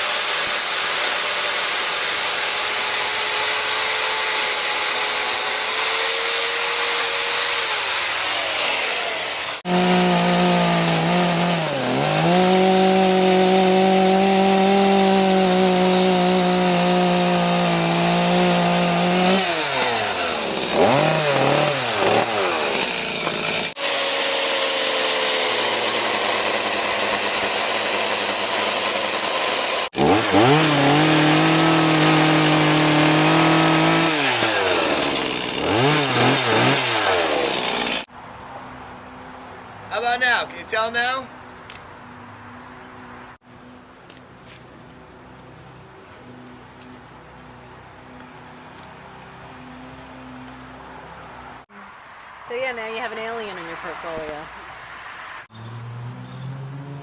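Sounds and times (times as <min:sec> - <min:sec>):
chainsaw cutting wood: 0:00.0 - 0:38.1.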